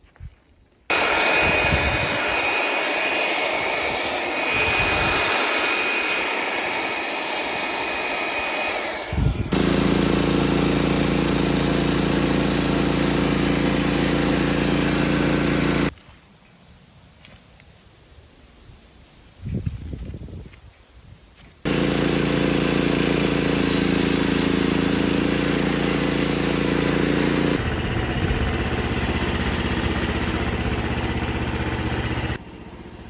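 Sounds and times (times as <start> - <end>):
bandsaw blade cutting log: 0.9 - 15.9, 21.7 - 28.0
engine drone: 0.9 - 15.9, 21.7 - 33.0.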